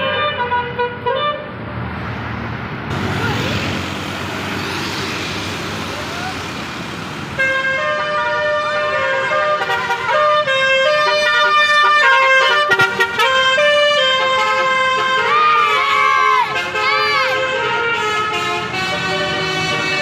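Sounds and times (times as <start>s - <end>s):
multi-tone musical bus horn: 0.0s - 1.6s, 7.4s - 20.0s
road traffic noise: 0.0s - 20.0s.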